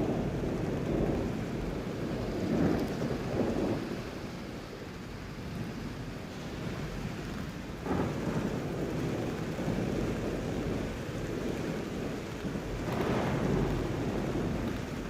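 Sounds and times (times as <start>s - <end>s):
thunder rumbling: 0.0s - 4.6s, 7.7s - 15.0s
steady rain: 0.0s - 15.0s.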